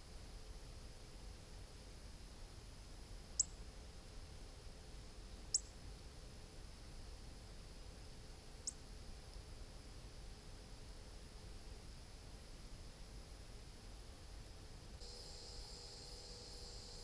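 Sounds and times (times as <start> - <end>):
small bird chirping: 3.4 - 3.6, 5.4 - 5.8.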